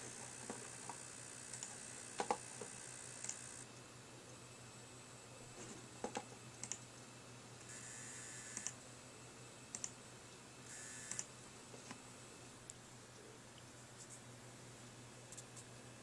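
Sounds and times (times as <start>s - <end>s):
coil whine buzz: 0.0s - 16.0s
sharp clicks: 6.6s - 6.8s, 9.7s - 10.0s.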